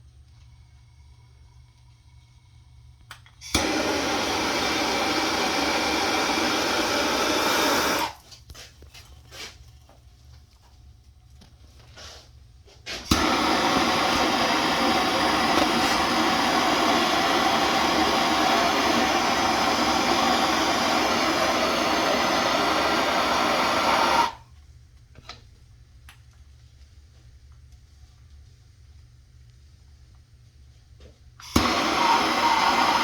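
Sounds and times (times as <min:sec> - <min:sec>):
torch igniting click: 0:03.1 - 0:08.2, 0:13.0 - 0:24.4, 0:31.4 - 0:33.0
hissing torch flame: 0:03.5 - 0:08.2, 0:12.9 - 0:24.4, 0:31.5 - 0:33.0.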